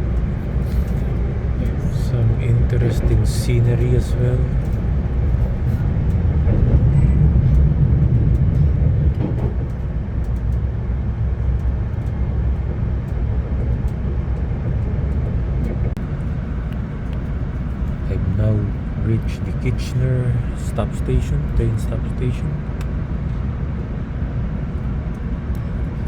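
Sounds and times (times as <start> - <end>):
train rumbling along track: 0.0 - 26.0.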